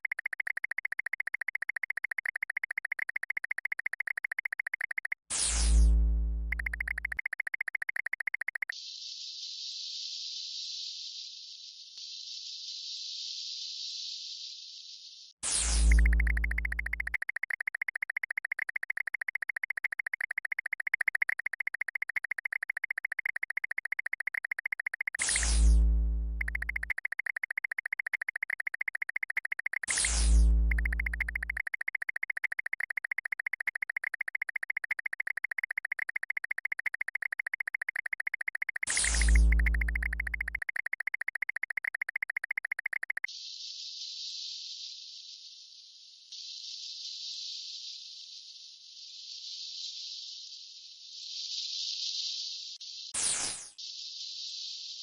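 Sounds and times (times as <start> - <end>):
electronic buzzing pulsing tone: 0.0 - 8.7, 15.5 - 43.3.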